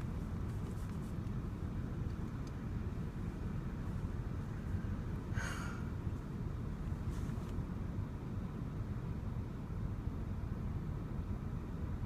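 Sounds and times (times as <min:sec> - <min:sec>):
car engine idling: 0:00.0 - 0:12.0
short breathy sound: 0:05.3 - 0:05.9.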